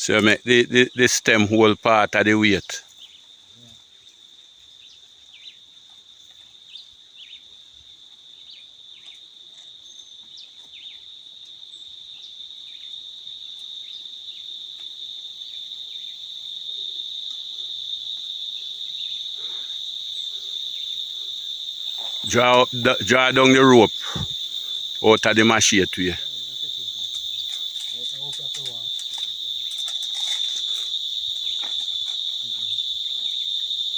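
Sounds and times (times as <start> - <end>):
high-pitched insect chorus: 0.0 - 33.9
faint chirps: 15.4 - 33.8.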